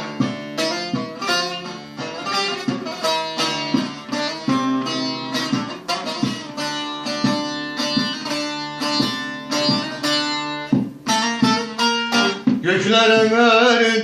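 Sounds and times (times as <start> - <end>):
plucked string instrument melody: 0.0 - 14.0.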